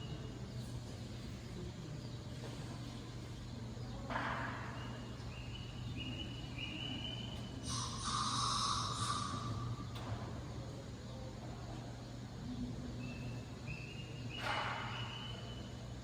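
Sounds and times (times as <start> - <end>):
hiss-like noise: 6.6 - 10.4
anteater hiccuping: 7.6 - 9.8.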